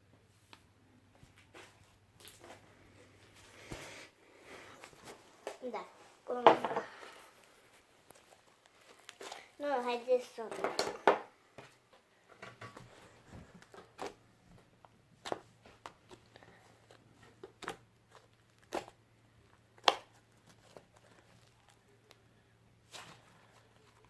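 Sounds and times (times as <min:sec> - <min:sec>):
slime popping and crackling: 0:17.4 - 0:22.2.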